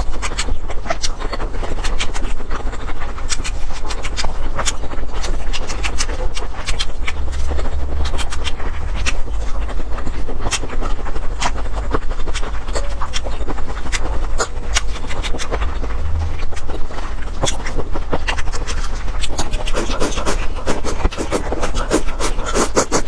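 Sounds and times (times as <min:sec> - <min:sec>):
crunchy chewing: 0:00.0 - 0:23.0
low rumble: 0:05.1 - 0:19.1.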